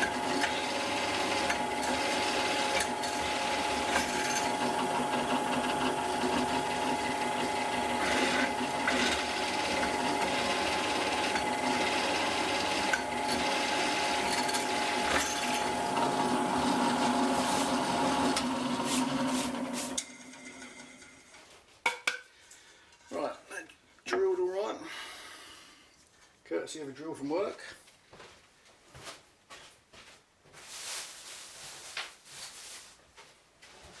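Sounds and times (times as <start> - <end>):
electric drill drilling metal: 0.0 - 21.1.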